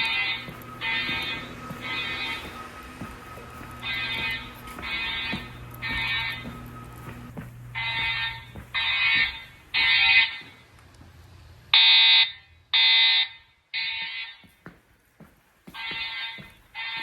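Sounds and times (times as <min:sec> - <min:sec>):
alarm tone bursts: 0:00.0 - 0:10.4.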